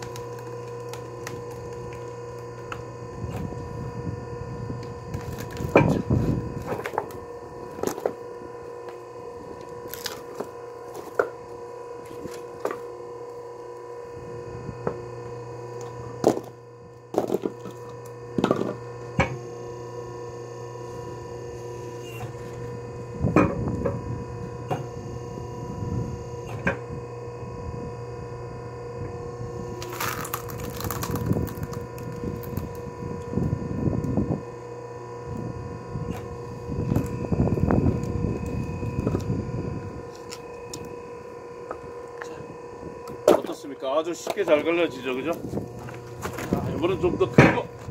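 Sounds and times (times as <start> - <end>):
logs cracking and splitting: 0.0 - 3.5, 4.8 - 11.4, 29.7 - 33.4, 45.2 - 47.9
log splitter motor and pump hum: 0.0 - 47.9.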